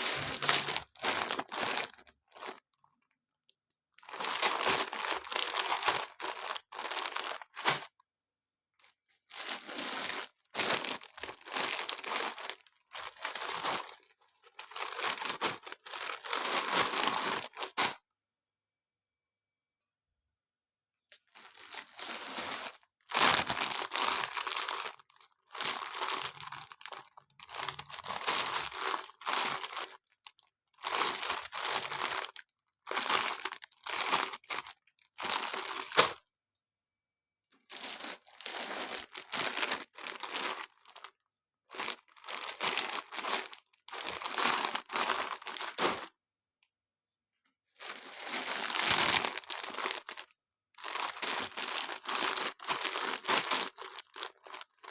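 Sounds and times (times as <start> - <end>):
plastic packaging crinkling and tearing: 0.0 - 2.6, 4.1 - 7.9, 9.3 - 18.0, 21.2 - 30.0, 37.7 - 41.1, 41.8 - 46.1, 47.8 - 54.9.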